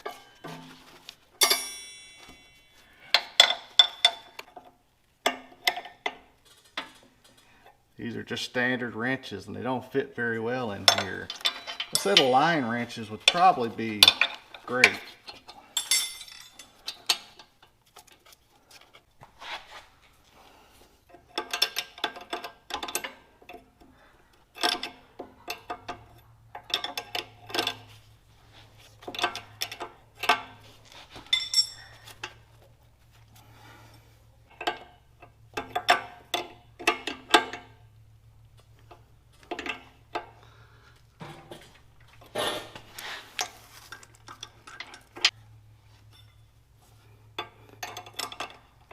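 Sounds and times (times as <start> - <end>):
wrenches clinking on metal fittings: 1.4 - 7.5, 10.3 - 18.9, 21.1 - 28.1, 29.0 - 32.5, 34.5 - 38.0, 38.8 - 40.6, 41.4 - 45.4, 47.3 - 48.9.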